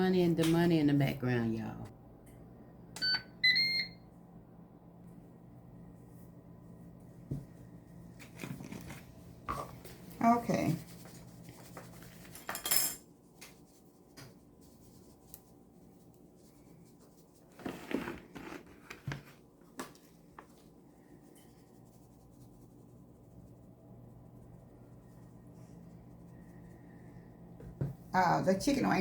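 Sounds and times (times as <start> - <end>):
faint steady hum: 0.0 - 29.0
rustling and scraping: 8.1 - 23.5.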